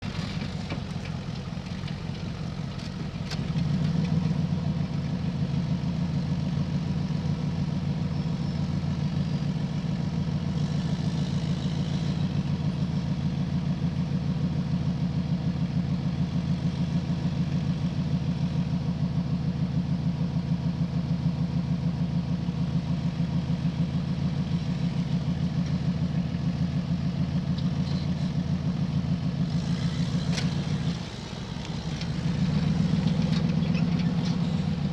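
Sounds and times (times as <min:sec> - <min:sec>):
buggy engine running: 0:00.0 - 0:34.9.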